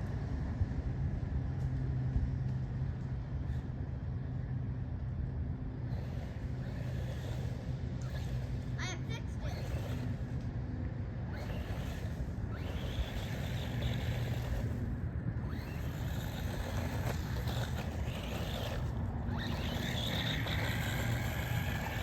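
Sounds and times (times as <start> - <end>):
rumbling outdoor background noise: 0.0 - 22.0
rc buggy motor whining: 3.4 - 3.9, 5.6 - 10.6, 11.2 - 22.0.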